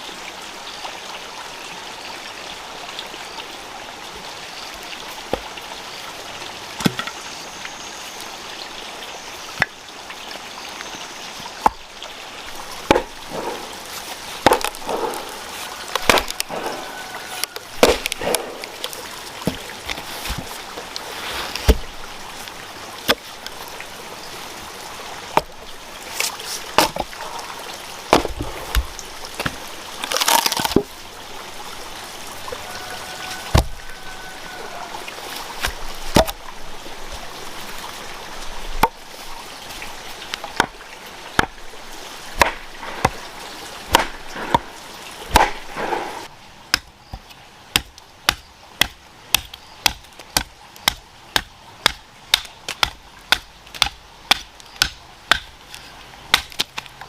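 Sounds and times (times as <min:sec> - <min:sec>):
water trickling: 0:00.0 - 0:57.0
chopping wood: 0:06.8 - 0:07.2, 0:12.8 - 0:13.8, 0:14.4 - 0:16.9, 0:17.5 - 0:20.6, 0:21.5 - 0:21.9, 0:26.7 - 0:27.1, 0:28.1 - 0:30.9, 0:33.5 - 0:33.8, 0:35.6 - 0:36.4, 0:40.6 - 0:40.8, 0:41.4 - 0:41.6, 0:42.4 - 0:43.2, 0:43.9 - 0:44.7, 0:45.3 - 0:55.5, 0:56.3 - 0:56.8.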